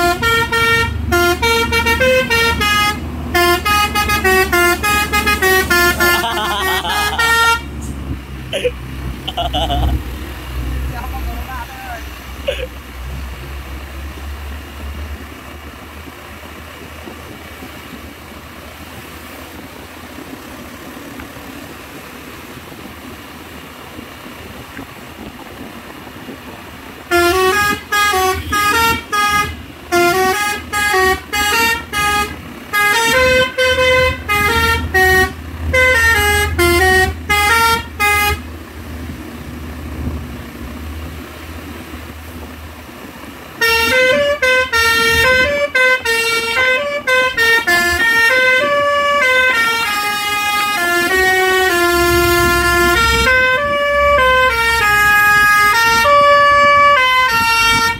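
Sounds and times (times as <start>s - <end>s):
musical truck horn melody: 0.0s - 8.0s, 27.1s - 38.5s, 43.6s - 57.9s
truck engine rumble: 0.0s - 57.9s.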